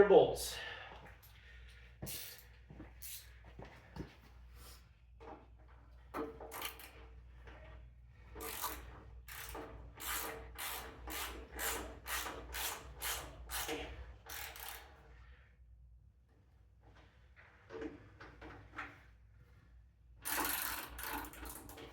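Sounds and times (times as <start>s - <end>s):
ratchet wrench ratcheting: 6.5s - 7.0s, 8.4s - 15.0s, 20.2s - 21.9s.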